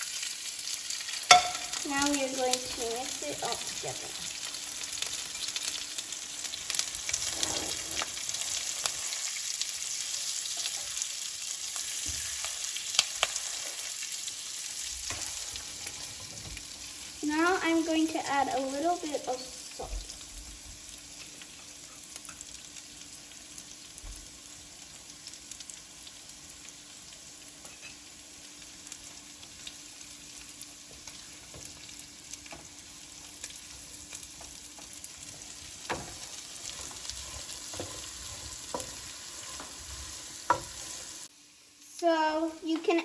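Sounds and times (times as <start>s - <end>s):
meat sizzling in oil: 0.0s - 43.0s
spoon knocking against pan: 1.3s - 1.8s.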